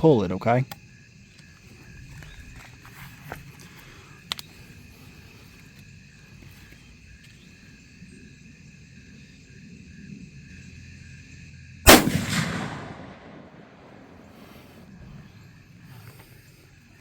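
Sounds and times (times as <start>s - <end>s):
rifle shot: 11.9s - 14.4s.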